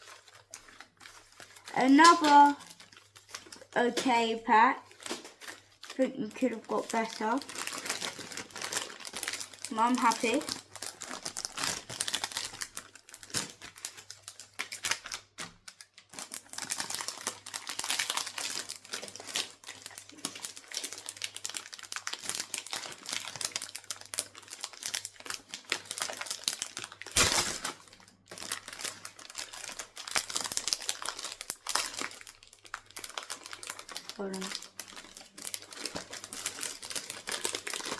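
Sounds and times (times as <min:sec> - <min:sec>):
foil wrapper crinkling: 0:00.0 - 0:37.9.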